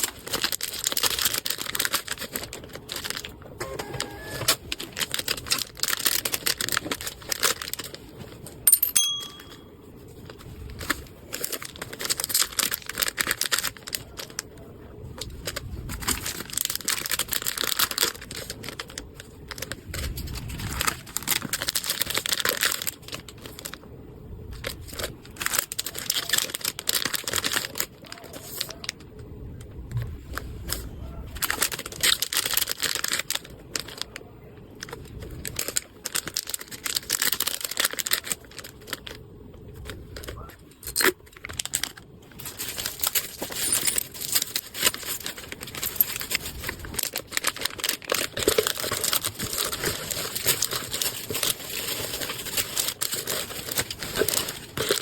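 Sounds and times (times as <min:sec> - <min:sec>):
packaging crinkling and tearing: 0:00.0 - 0:08.6, 0:09.3 - 0:55.0
sharp clink: 0:08.7 - 0:09.6.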